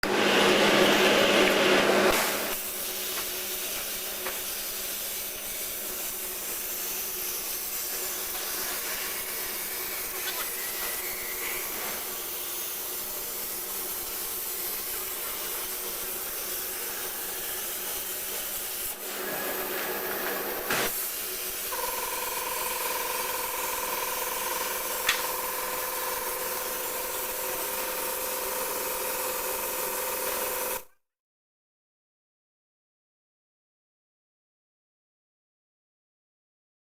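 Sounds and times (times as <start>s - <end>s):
plasma arc hissing: 2.1s - 30.8s.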